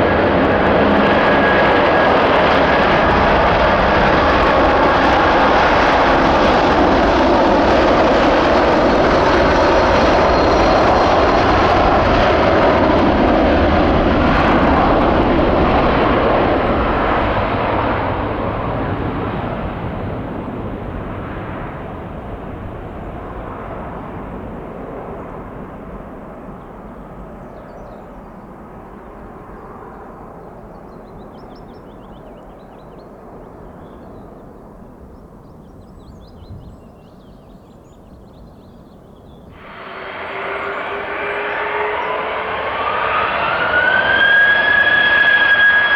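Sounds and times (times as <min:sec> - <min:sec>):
jet engines roaring: 0:00.0 - 0:27.4, 0:39.5 - 0:45.9.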